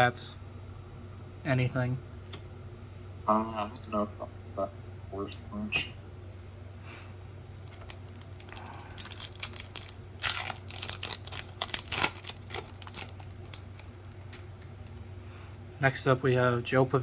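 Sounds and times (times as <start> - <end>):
plastic wrapper crinkling and tearing: 7.6 - 15.0.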